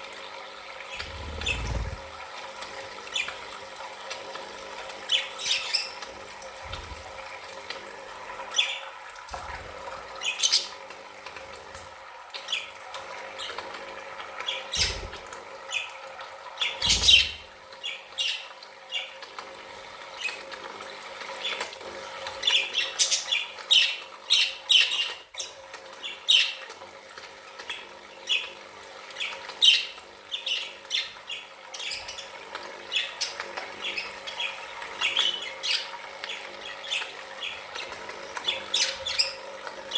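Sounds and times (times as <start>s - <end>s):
budgerigars chirping and squawking: 1.0s - 2.0s, 10.2s - 10.8s, 14.5s - 15.9s, 16.6s - 17.4s, 32.9s - 39.4s.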